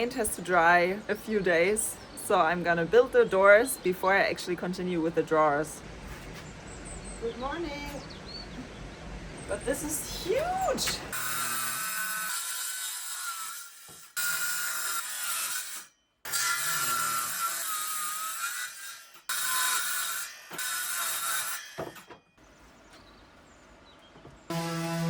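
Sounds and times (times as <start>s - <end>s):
power saw cutting wood: 10.8s - 22.2s, 24.5s - 25.0s.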